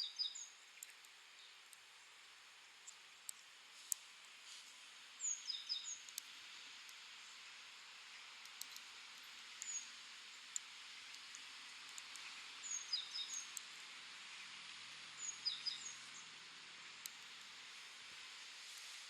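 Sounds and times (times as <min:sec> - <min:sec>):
steady outdoor hiss: 0:00.0 - 0:19.0
birds chirping: 0:11.2 - 0:13.6, 0:14.2 - 0:17.4.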